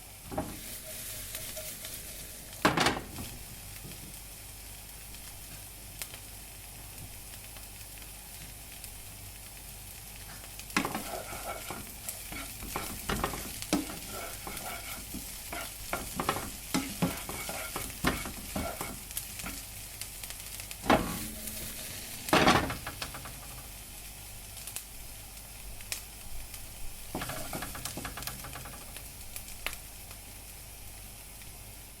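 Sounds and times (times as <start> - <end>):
food sizzling in a pan: 0.0 - 32.0
utensil scraping a pan: 10.8 - 19.6, 20.8 - 23.5, 27.1 - 29.0.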